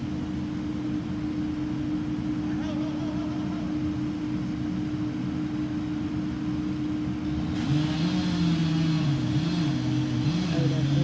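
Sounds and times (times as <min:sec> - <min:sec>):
deeper engine working under load: 0:00.0 - 0:11.0
steady engine hum: 0:00.0 - 0:11.0.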